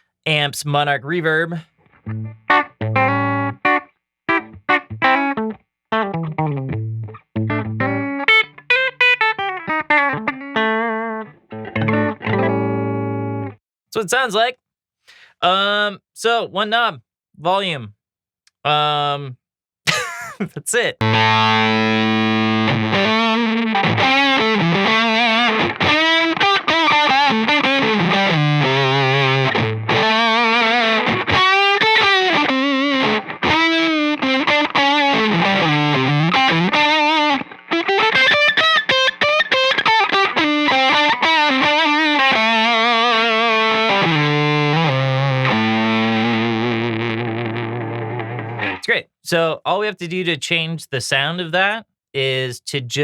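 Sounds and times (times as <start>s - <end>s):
distorted electric guitar: 2.1s - 13.6s, 21.0s - 48.8s.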